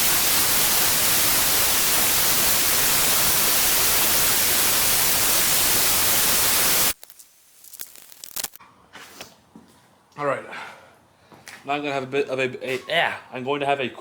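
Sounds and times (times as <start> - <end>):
loud static hiss: 0.0 - 8.6.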